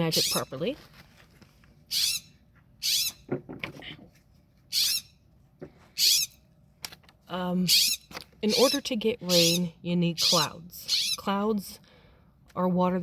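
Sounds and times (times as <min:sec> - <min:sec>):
blue jay squawking: 0:00.0 - 0:00.6, 0:01.9 - 0:03.3, 0:04.7 - 0:05.2, 0:06.0 - 0:06.4, 0:07.6 - 0:11.4.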